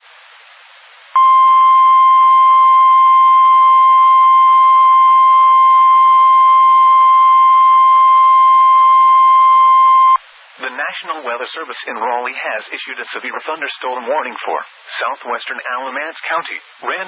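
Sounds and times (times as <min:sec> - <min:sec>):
faint radio hiss: 0:00.0 - 0:17.0
steady warning alarm tone: 0:01.2 - 0:10.2.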